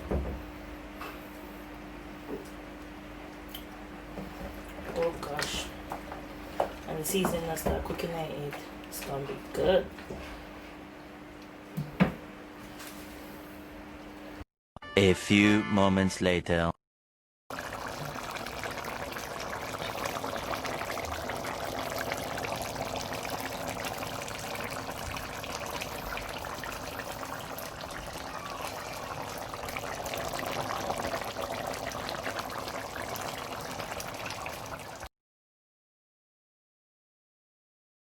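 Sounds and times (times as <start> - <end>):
pot of stew bubbling: 17.5 - 35.1.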